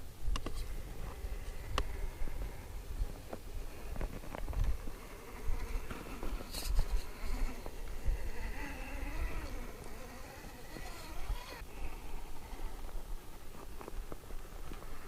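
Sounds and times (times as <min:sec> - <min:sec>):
electric motor whining: 0:03.8 - 0:12.7.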